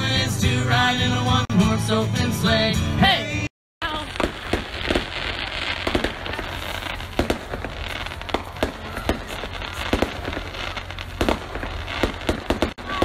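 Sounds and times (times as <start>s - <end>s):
steady rumbling noise: 3.8s - 13.0s.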